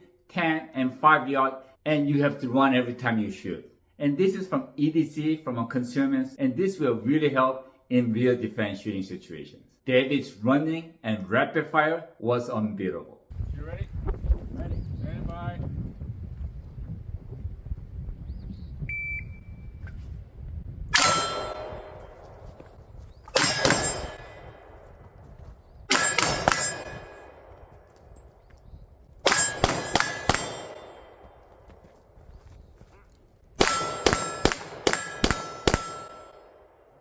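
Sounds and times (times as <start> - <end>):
bullets clanging on steel targets: 21.0 - 22.6, 23.3 - 24.8, 25.9 - 28.4, 29.2 - 31.6, 33.6 - 36.6
pistol shots: 23.3 - 25.0, 25.9 - 28.0, 29.2 - 31.8, 33.6 - 37.0.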